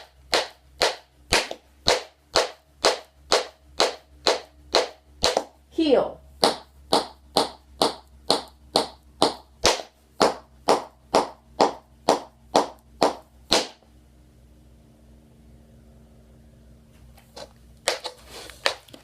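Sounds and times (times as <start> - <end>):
tap shoes striking floor: 0.3 - 5.6, 6.4 - 13.8, 17.3 - 19.0.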